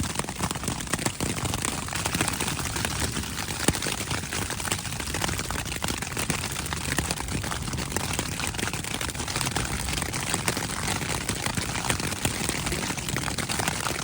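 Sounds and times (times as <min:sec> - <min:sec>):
hail and rain on tent fabric: 0:00.0 - 0:14.0.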